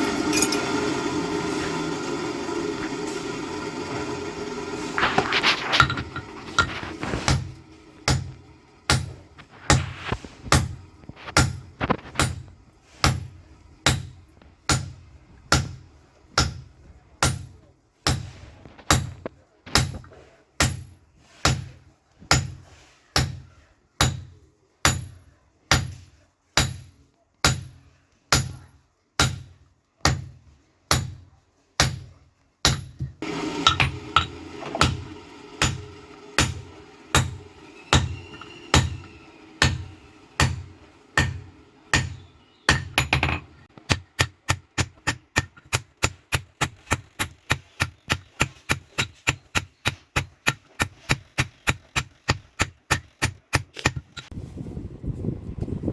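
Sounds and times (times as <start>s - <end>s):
hammer blows on steel anvil: 32.7s - 45.5s
background sound with held tones: 33.2s - 43.7s.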